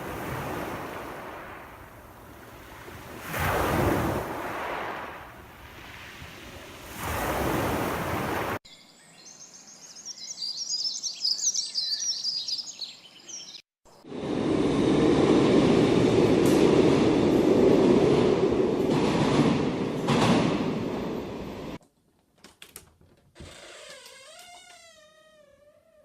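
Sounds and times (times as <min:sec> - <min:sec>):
waves washing out: 0:00.0 - 0:08.6, 0:14.1 - 0:21.8
birds chirping: 0:08.7 - 0:14.0.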